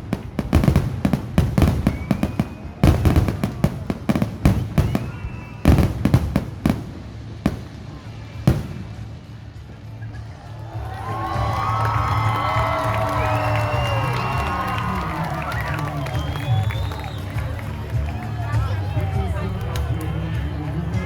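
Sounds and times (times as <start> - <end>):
fireworks bangs and crackles: 0.0 - 21.0
firework whistles: 0.5 - 9.0, 11.5 - 17.6.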